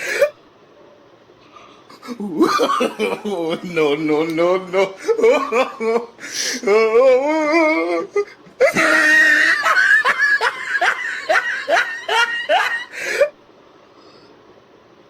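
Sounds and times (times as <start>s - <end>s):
person laughing hard: 1.9s - 13.3s.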